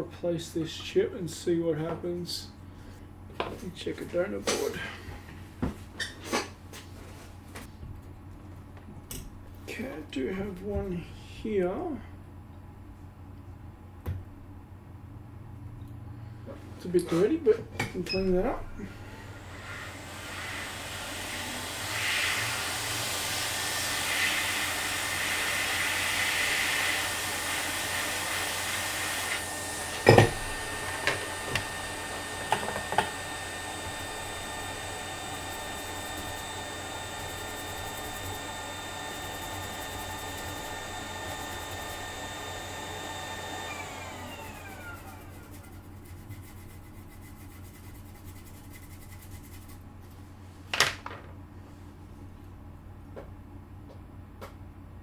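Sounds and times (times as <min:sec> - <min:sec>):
fan winding down whine: 0:15.5 - 0:45.9
hot air blower blowing: 0:18.2 - 0:46.7.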